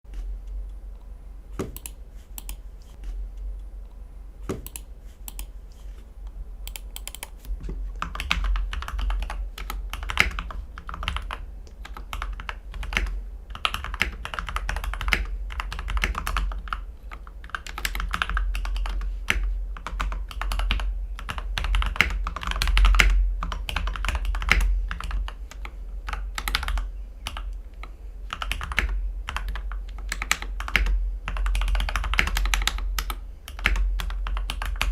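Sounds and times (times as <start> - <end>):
mechanical keyboard typing: 6.7 - 7.4, 8.0 - 34.9.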